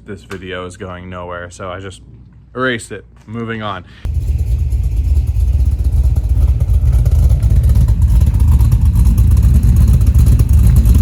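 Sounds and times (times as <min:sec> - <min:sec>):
car engine idling: 0:04.1 - 0:11.0.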